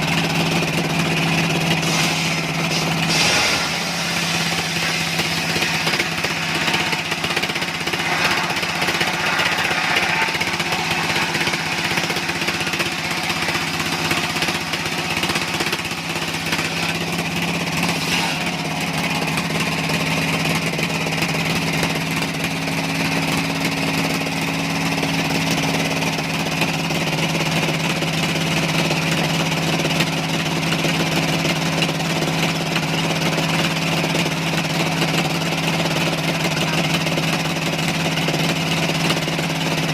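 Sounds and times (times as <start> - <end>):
saw machinery low hum: 0.0 - 26.4.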